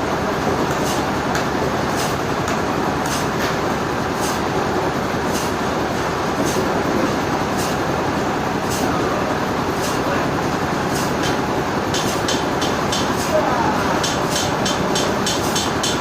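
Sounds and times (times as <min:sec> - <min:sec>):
sawmill machinery rumbling: 0:00.0 - 0:16.0
sharp mechanical clicks: 0:14.0 - 0:16.0.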